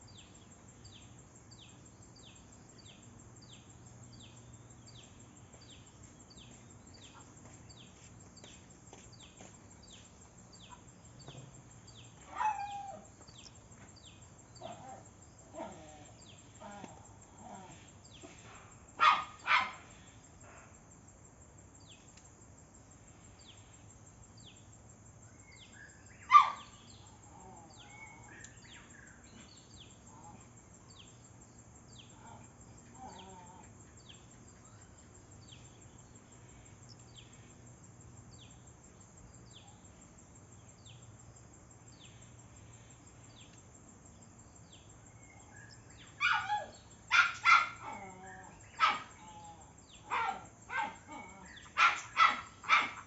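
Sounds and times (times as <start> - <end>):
dog barking: 19.0 - 19.9, 26.3 - 26.8, 46.2 - 49.4, 50.0 - 53.0.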